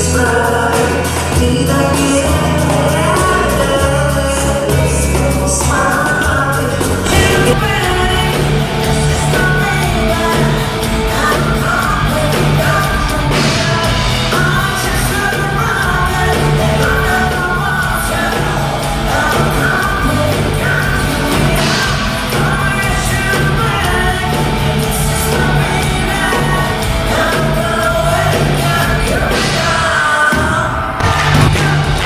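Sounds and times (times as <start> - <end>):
band playing pop rock: 0.0 - 32.0
woman singing: 0.0 - 32.0.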